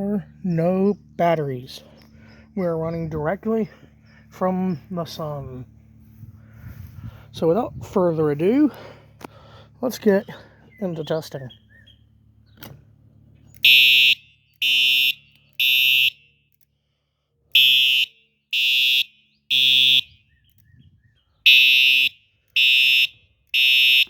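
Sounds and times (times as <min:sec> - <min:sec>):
fire alarm horn blasts: 0:13.6 - 0:16.6, 0:17.5 - 0:20.3, 0:21.4 - 0:24.0.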